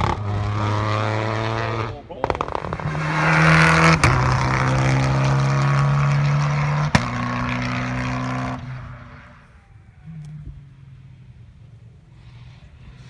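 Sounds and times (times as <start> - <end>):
rally car engine at high revs: 2.3 - 7.2.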